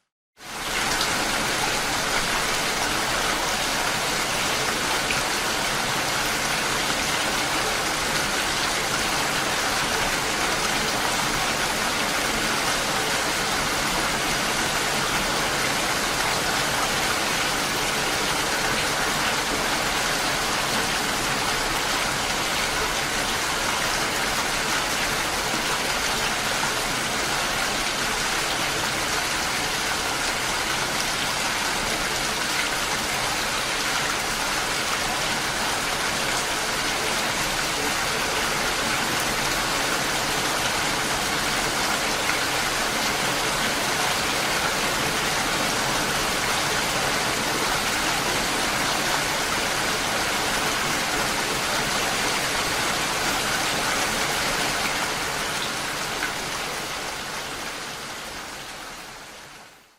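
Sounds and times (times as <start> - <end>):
dense rain falling: 0.0 - 59.9.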